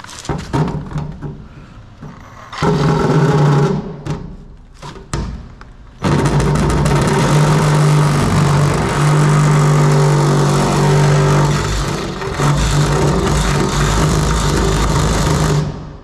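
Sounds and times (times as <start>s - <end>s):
power tool motor running: 6.9s - 15.8s.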